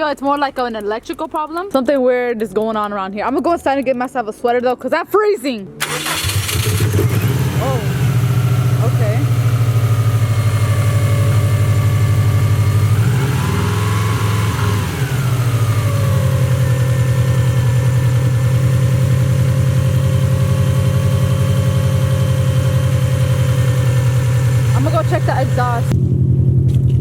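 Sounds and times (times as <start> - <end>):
car engine idling: 5.8 - 27.0.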